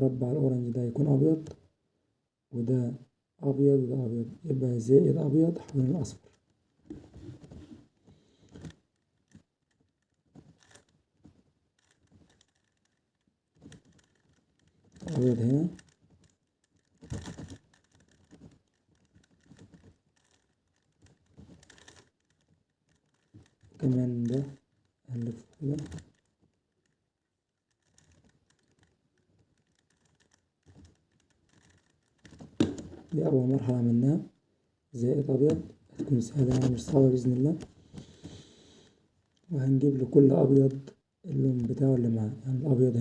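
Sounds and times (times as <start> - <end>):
plastic puzzle cube clicks: 8.4 - 10.9, 11.8 - 24.7, 27.6 - 33.1.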